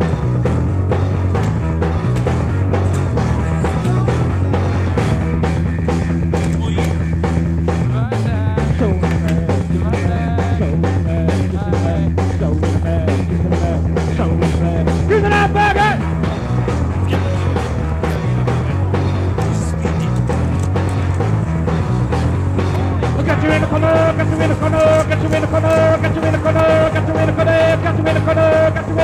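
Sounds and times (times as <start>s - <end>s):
rock music: 0.0s - 29.0s
bending vocal or lead line: 3.1s - 16.1s, 23.0s - 29.0s.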